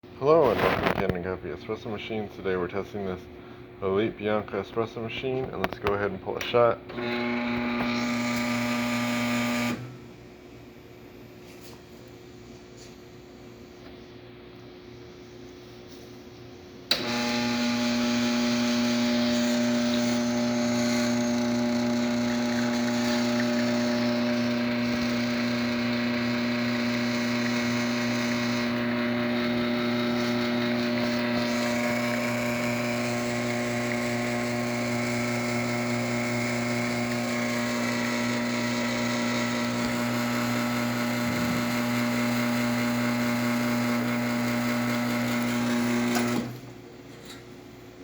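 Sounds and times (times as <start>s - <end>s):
espresso machine pump humming: 6.9s - 9.9s, 16.9s - 46.7s.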